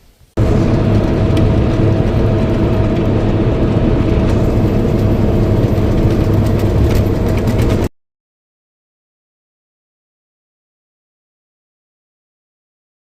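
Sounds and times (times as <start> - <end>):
combine engine running: 0.4 - 7.9.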